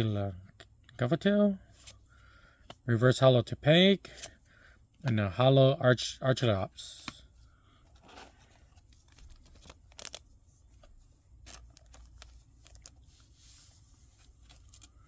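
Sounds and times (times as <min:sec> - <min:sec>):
cards and wrappers rustling: 0:07.9 - 0:15.0.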